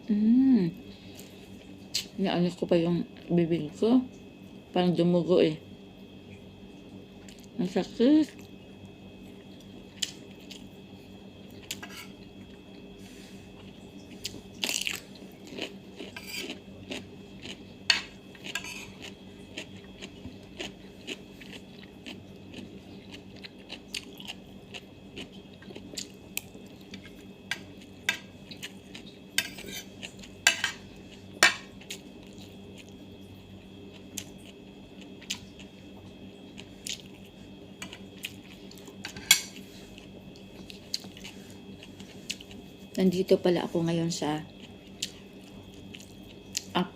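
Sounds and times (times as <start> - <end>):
steady hum: 0.0 - 46.9
crunchy chewing: 11.4 - 43.0, 44.5 - 46.8.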